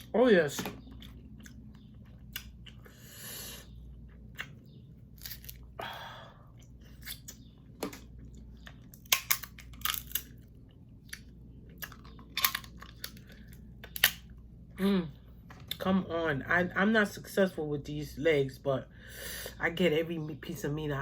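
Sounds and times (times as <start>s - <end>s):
shell crunching and wet smacks: 0.7s - 2.9s, 6.5s - 14.5s.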